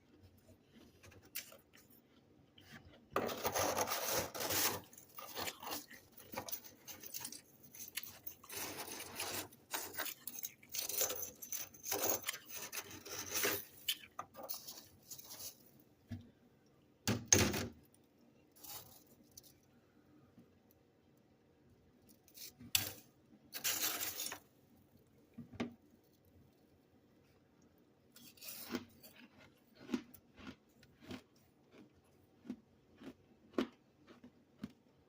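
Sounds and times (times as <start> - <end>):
frost being scraped: 3.3 - 15.7, 18.6 - 19.2, 23.6 - 24.4.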